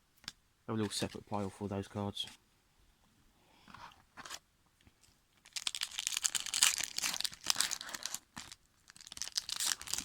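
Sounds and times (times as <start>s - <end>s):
foil wrapper tearing and crinkling: 5.4s - 10.0s.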